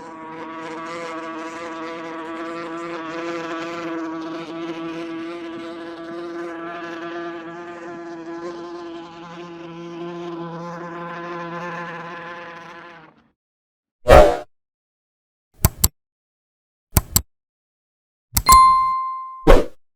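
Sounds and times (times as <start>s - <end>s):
wasp buzzing in flight: 0.0s - 13.3s.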